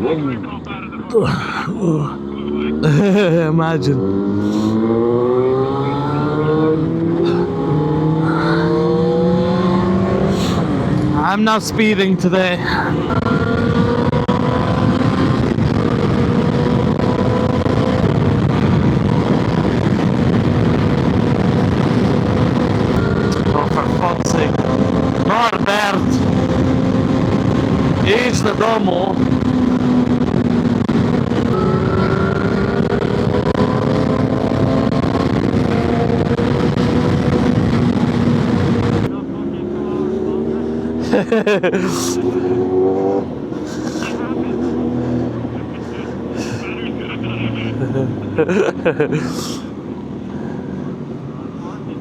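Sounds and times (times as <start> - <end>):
wind and road noise: 0.0 - 52.0
motorcycle engine cruising: 1.2 - 52.0.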